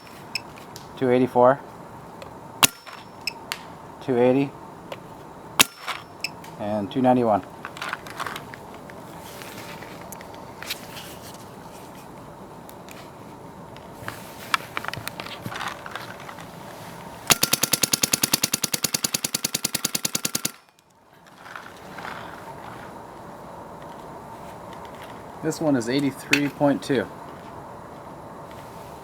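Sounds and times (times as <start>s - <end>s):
paintball marker rapid firing: 17.3s - 20.8s
scattered clicks: 17.3s - 21.0s.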